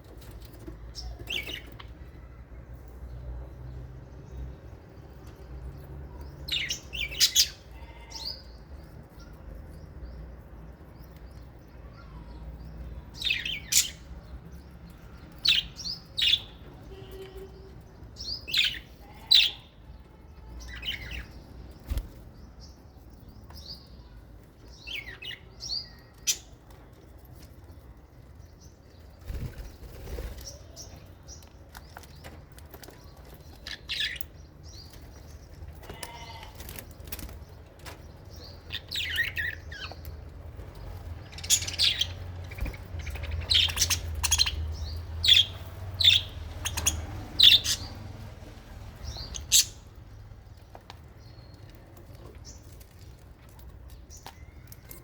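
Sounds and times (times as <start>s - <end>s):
small parrots chirping and squawking: 6.5s - 9.4s, 13.1s - 14.4s, 15.3s - 19.8s, 20.6s - 22.0s, 32.0s - 50.3s.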